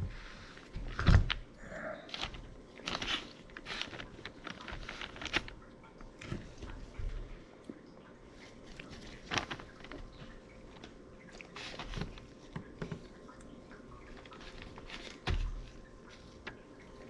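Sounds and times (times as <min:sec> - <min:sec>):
rubber rubbing and crinkling: 0:02.1 - 0:07.2, 0:08.6 - 0:10.2, 0:14.1 - 0:16.5.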